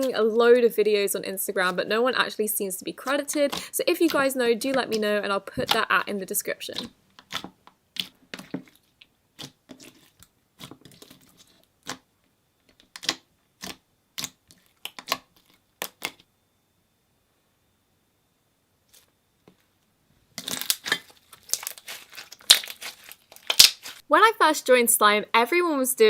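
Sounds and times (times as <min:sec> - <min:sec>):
slime crackling: 0:20.4 - 0:24.0.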